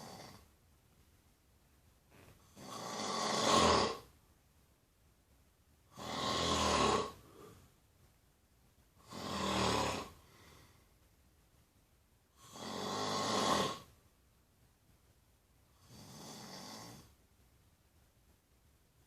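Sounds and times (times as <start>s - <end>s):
person snoring: 0.0s - 0.4s, 2.4s - 4.1s, 5.9s - 7.6s, 9.0s - 10.8s, 12.4s - 13.9s, 15.8s - 17.1s.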